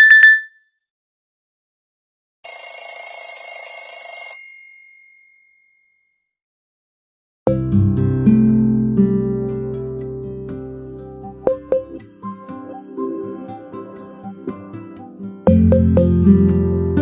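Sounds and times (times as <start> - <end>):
plucked guitar-like tone: 7.5 - 12.0, 15.5 - 17.0
phone alert tone ringing: 11.5 - 12.0, 15.5 - 16.3.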